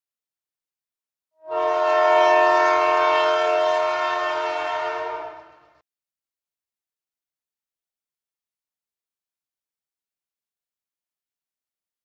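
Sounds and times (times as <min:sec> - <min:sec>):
train horn chord: 0:01.4 - 0:05.8.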